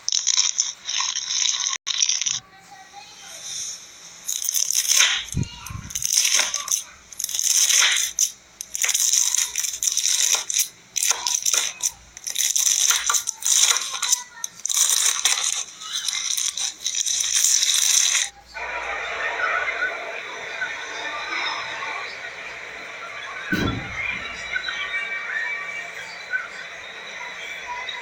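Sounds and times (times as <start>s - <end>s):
slime crackling and clicking: 4.3s - 18.3s.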